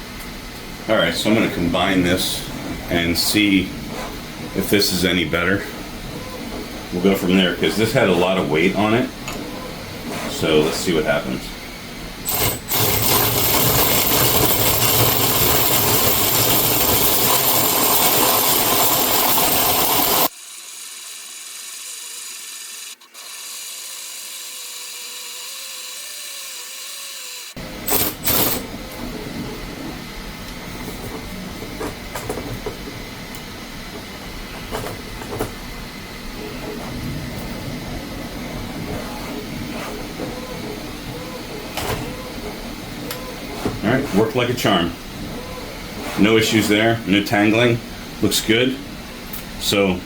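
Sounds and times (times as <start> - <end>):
drill running: 12.1 - 29.4.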